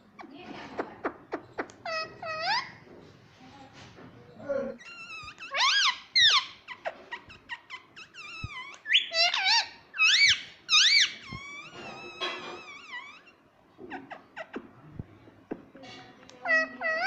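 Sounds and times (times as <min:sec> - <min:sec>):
parrot squawking: 0:01.0 - 0:02.8, 0:04.8 - 0:14.7, 0:16.4 - 0:17.0.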